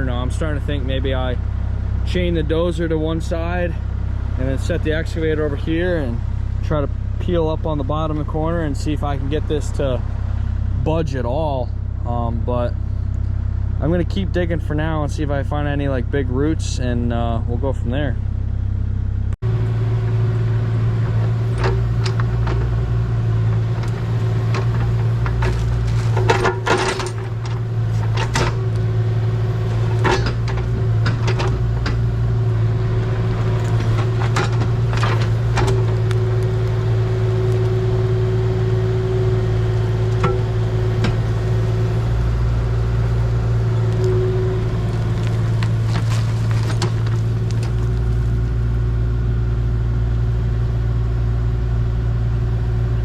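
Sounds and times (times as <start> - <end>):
excavator engine hum: 0.0 - 53.0
bucket knocking and scraping: 23.5 - 28.7.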